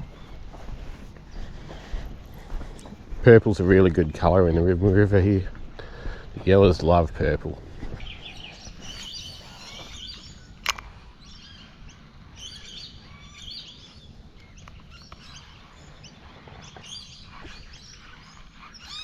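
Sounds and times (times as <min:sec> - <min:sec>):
birds chirping: 0:00.0 - 0:19.0
sharp click: 0:10.6 - 0:10.9.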